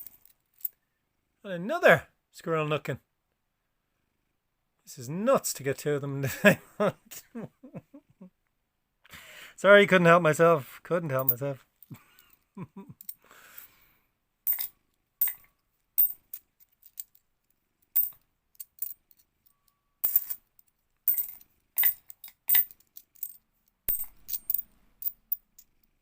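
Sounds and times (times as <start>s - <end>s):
coins clinking: 14.5s - 17.1s, 18.0s - 19.2s, 20.0s - 20.4s, 21.1s - 25.8s.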